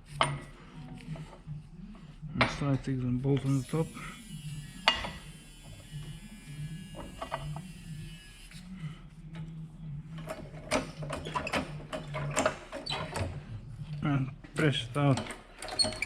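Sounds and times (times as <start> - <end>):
steady low hum: 0.0 - 10.7.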